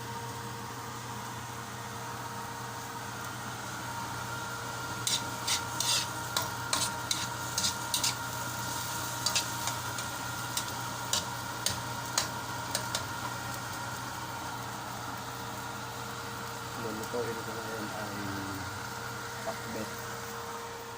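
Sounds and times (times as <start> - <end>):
steady hum: 0.0 - 20.9
utensil scraping in pan: 5.0 - 13.1.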